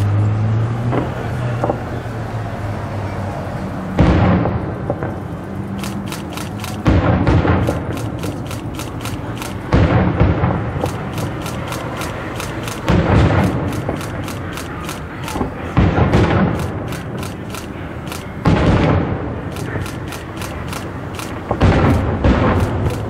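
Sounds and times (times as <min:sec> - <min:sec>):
fireworks booming: 0:03.9 - 0:06.1, 0:06.8 - 0:23.0
fireworks crackle: 0:04.0 - 0:23.0.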